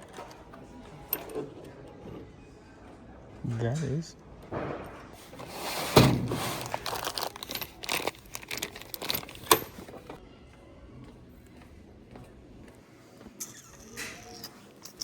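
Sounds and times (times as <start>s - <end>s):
hardware crinkling and rustling: 5.2s - 10.2s, 13.8s - 15.0s.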